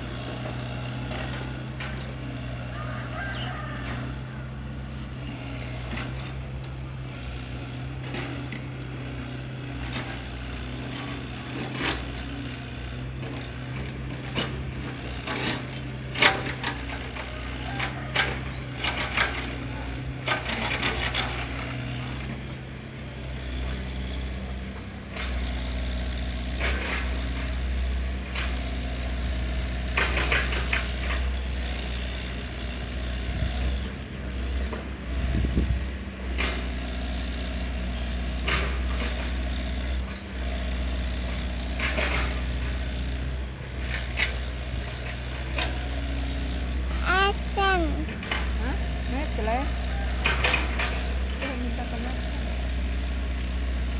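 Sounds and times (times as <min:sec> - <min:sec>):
diesel excavator engine running: 0:00.0 - 0:53.9.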